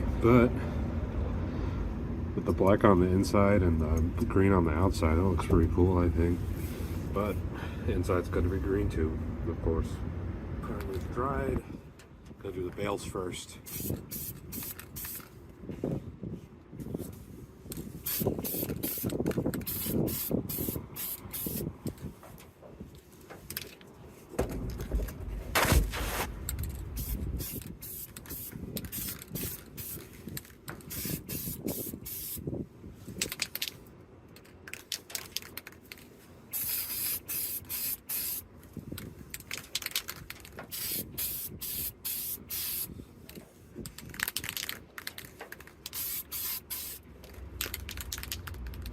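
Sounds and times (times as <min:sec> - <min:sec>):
spray can hissing: 0:13.7 - 0:15.2, 0:18.0 - 0:21.7, 0:27.0 - 0:30.0, 0:30.9 - 0:32.4, 0:36.5 - 0:38.4, 0:40.7 - 0:42.9, 0:45.9 - 0:47.0
loud bump: 0:25.5 - 0:26.3.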